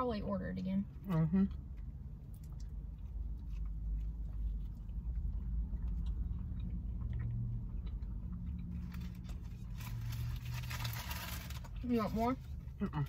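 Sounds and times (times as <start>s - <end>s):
low rumble inside car: 0.0s - 13.0s
quiet chewing: 1.0s - 10.3s.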